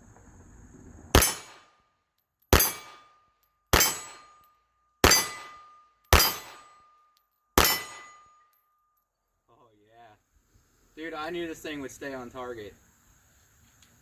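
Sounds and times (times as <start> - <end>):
pistol shots: 1.2 - 1.7, 2.5 - 3.1, 3.7 - 4.4, 5.0 - 6.8, 7.6 - 8.3.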